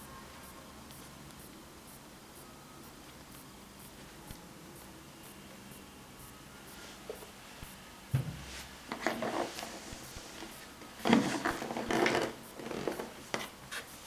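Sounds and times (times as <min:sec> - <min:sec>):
light knock: 0:08.1 - 0:08.5
rubbing and scuffing of shoes: 0:08.2 - 0:14.0.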